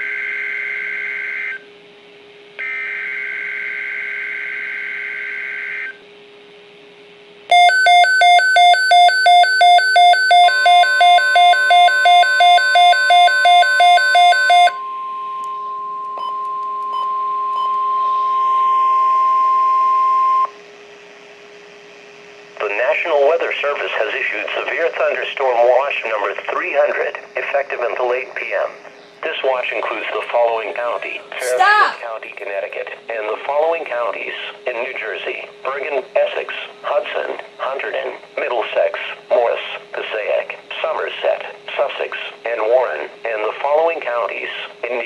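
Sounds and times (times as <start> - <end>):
pulsed electronic beeping: 7.5 - 20.5
steady alert tone: 9.0 - 18.8
faint low hum: 9.0 - 45.0.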